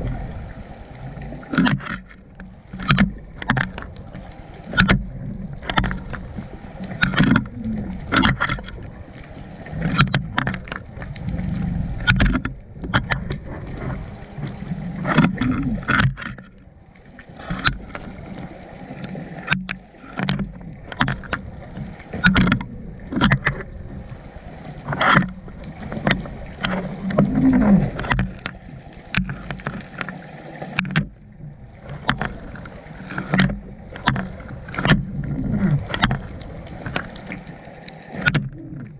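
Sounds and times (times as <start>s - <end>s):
muffled underwater rumble: 0.0s - 38.9s
sharp underwater clicks and knocks: 0.9s - 38.9s.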